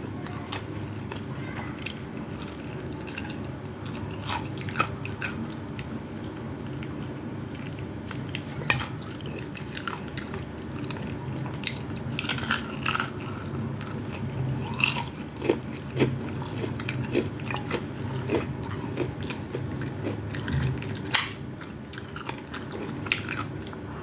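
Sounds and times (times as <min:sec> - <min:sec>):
steady low hum: 0:00.0 - 0:24.0
person chewing and biting food: 0:07.6 - 0:23.8.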